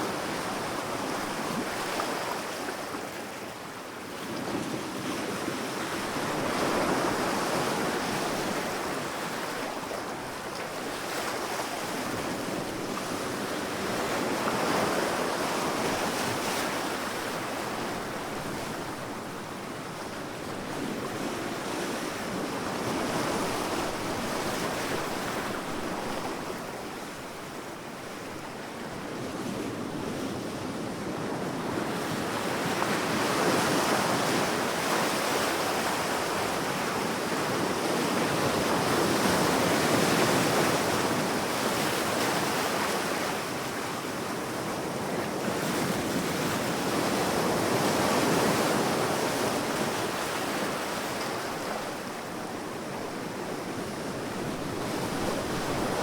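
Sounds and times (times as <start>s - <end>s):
sea waves breaking on beach: 0.0s - 56.0s.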